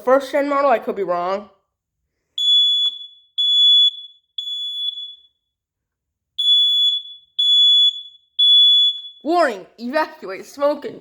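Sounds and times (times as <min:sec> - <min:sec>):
smoke alarm beeping: 0:02.4 - 0:05.5, 0:06.4 - 0:09.6.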